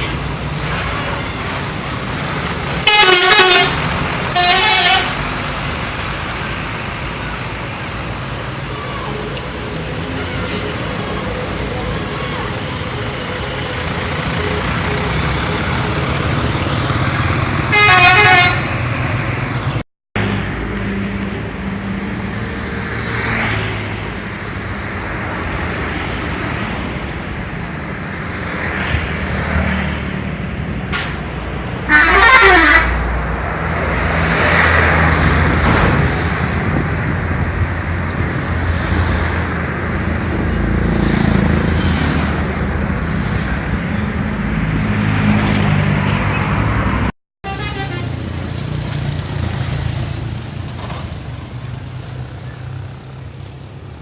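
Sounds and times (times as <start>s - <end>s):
bus engines and traffic rumble: 0.0s - 54.0s
multi-tone bus horn: 2.8s - 5.3s, 17.7s - 18.8s, 31.8s - 33.2s, 47.4s - 48.4s.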